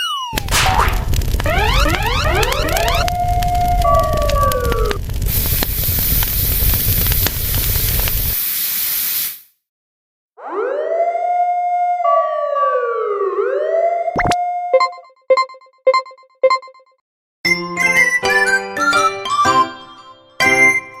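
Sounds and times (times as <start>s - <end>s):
siren-like wail: 0.3s - 5.0s, 10.4s - 14.8s
sharp hit: 0.4s - 3.1s
loud rushing noise: 0.4s - 6.1s.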